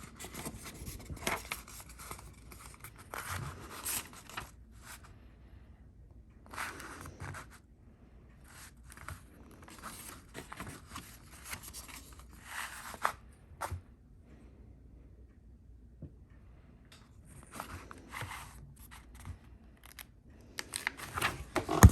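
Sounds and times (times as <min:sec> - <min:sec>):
paper pages rustling: 0:00.0 - 0:05.0, 0:08.6 - 0:13.8, 0:17.4 - 0:21.9.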